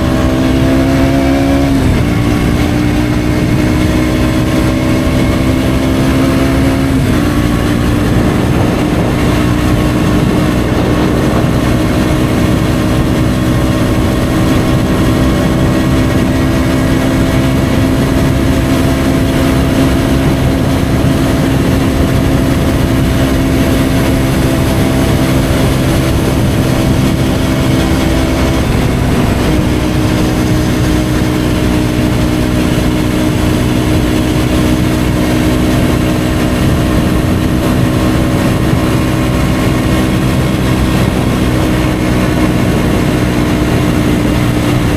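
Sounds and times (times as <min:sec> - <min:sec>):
motorcycle engine running: 0:00.0 - 0:44.9.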